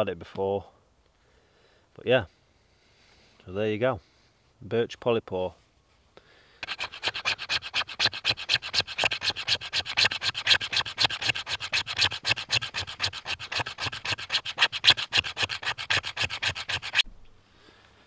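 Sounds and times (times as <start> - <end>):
fast scraping strokes: 6.6 - 17.1.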